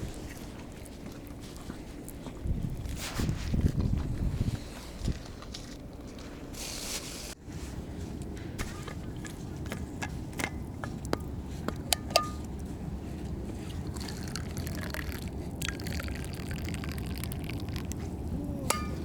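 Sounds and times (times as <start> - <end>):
water trickling and dripping: 13.8 - 18.0.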